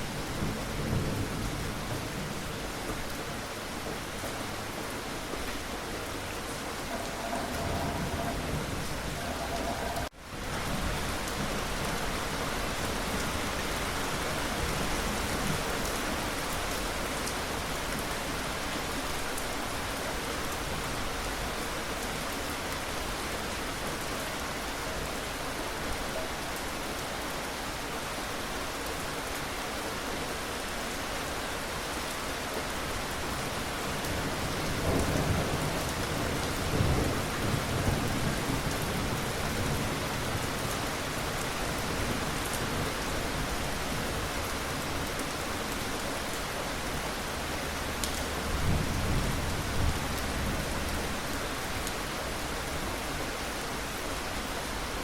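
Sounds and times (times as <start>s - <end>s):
steady rain: 0.0s - 55.0s
thunder rumbles: 6.0s - 11.9s, 47.9s - 51.3s.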